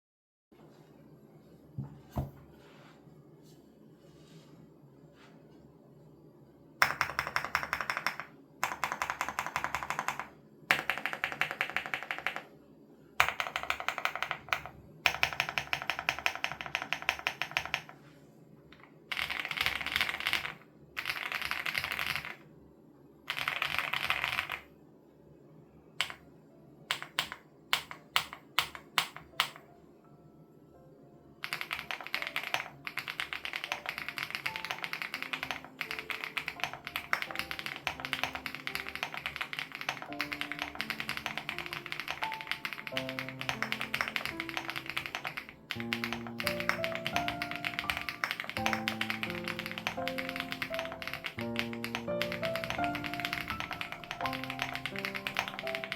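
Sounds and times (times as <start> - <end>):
typing on mechanical keyboard: 6.8 - 12.5, 13.2 - 18.0, 18.8 - 22.4, 23.3 - 24.7, 26.0 - 26.2, 26.9 - 29.6, 31.4 - 55.9.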